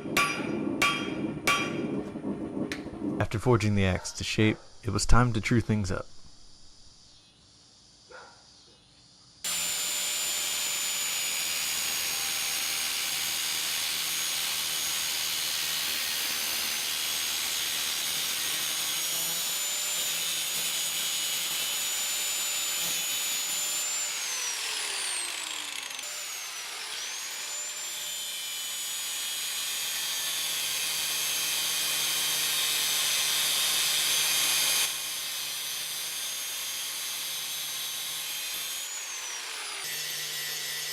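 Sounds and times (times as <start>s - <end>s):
grinder grinding steel: 9.5s - 40.9s
grinder motor whine: 9.5s - 40.9s.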